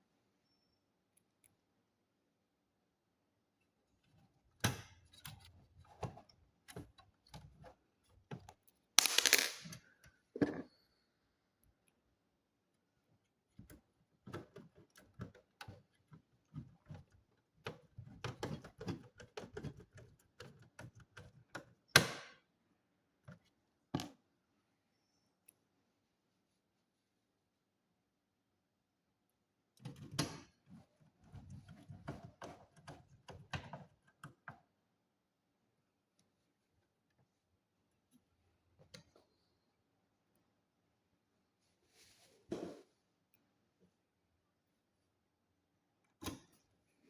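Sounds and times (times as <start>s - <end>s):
tools clicking and tapping: 9.0s - 9.8s
rustling scrape: 41.8s - 43.0s.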